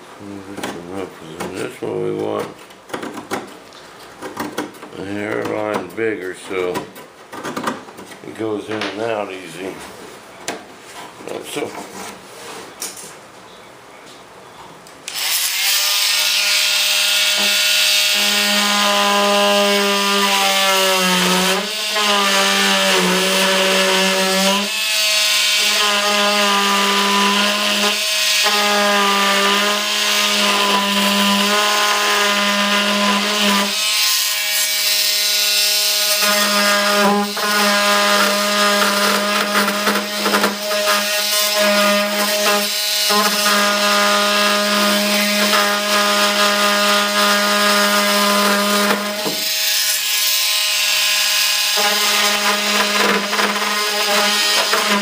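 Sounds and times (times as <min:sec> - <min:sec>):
power tool running: 0:15.1 - 0:55.0.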